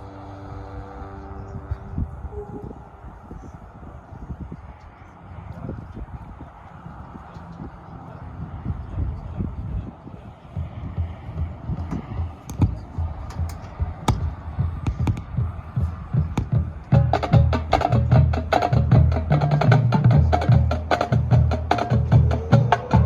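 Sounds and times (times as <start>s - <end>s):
marching band drums: 10.6s - 23.0s.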